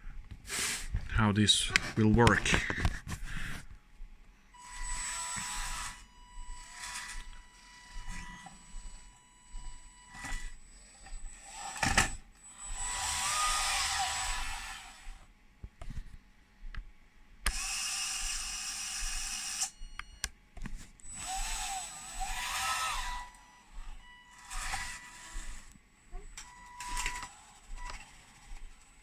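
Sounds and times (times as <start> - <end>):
small electric motors whining: 4.5 - 15.3, 17.5 - 20.3, 21.0 - 29.0.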